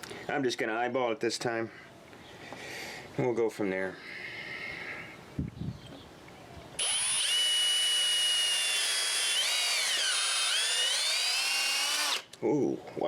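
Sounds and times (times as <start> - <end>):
electric drill boring into hard wood: 6.8 - 12.3.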